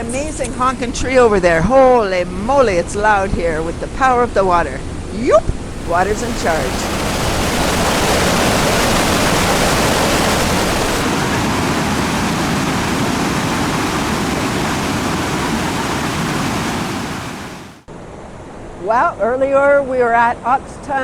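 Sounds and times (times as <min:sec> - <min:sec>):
waterfall rushing: 0:05.7 - 0:17.9.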